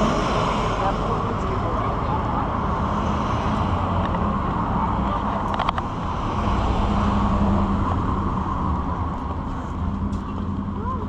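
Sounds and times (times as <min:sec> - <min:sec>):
engine rumbling: 0:00.0 - 0:11.0.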